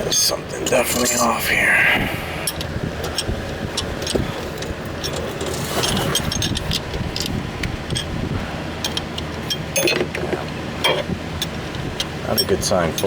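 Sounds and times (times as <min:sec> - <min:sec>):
metal tool clatter: 0:05.0 - 0:08.1, 0:08.9 - 0:11.1.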